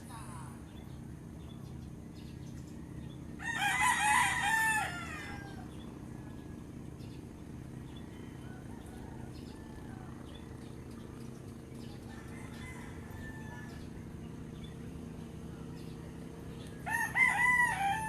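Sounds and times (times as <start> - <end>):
steady low hum: 0.0 - 18.0
distant rooster crowing: 3.3 - 18.0
rooster crowing: 3.4 - 6.6, 8.0 - 10.4, 11.8 - 14.2, 16.7 - 18.0.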